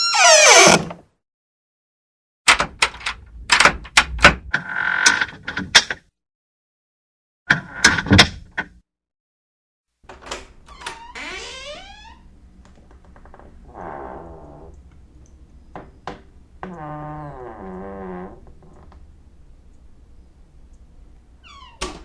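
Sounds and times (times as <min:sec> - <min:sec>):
squeaky hinge creak: 0:00.0 - 0:01.0, 0:10.7 - 0:12.2, 0:21.5 - 0:22.0.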